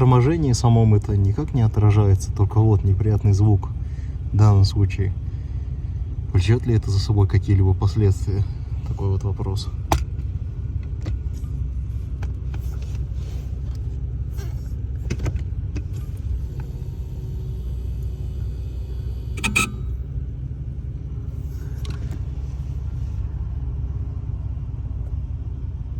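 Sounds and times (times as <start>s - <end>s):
car engine idling: 0.0s - 25.9s.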